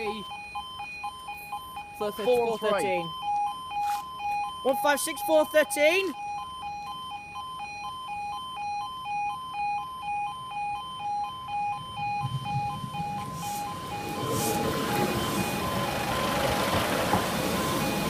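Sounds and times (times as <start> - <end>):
level crossing two-tone alarm: 0.0 - 18.0
diesel train rumble: 12.1 - 18.0.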